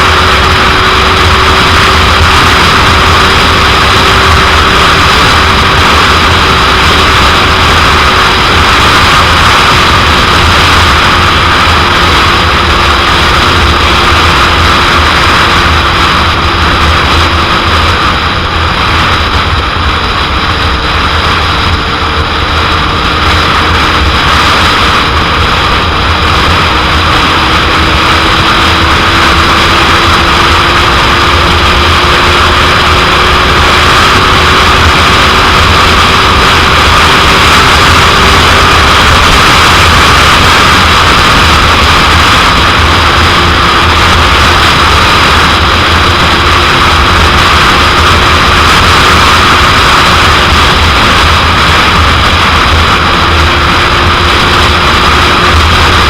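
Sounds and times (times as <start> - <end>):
motorcycle engine drone: 0.0 - 56.0
wind noise on microphone: 0.0 - 56.0.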